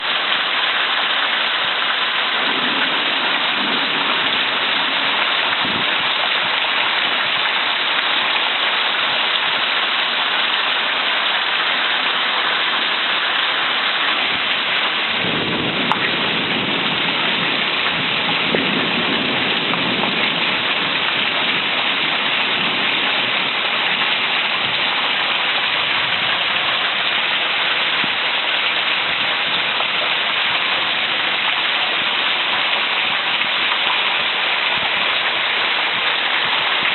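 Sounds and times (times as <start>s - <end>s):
heavy rain pouring: 0.0s - 36.9s
thunder rumbling: 2.2s - 7.5s, 14.1s - 25.2s.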